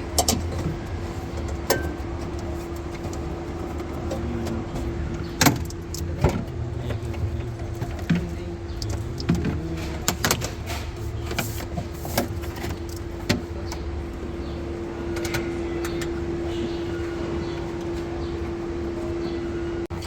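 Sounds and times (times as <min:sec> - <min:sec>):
clicks and knocks of parts handled: 0:00.0 - 0:13.9
mechanical hum with low rumble: 0:00.0 - 0:20.0.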